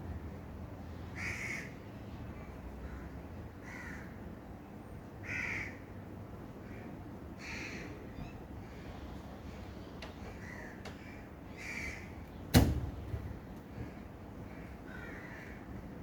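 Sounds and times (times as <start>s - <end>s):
crow cawing: 1.2s - 1.7s, 3.6s - 4.1s, 5.2s - 5.8s, 7.4s - 7.9s, 10.4s - 12.1s, 14.5s - 15.6s
low background rumble: 7.4s - 16.0s.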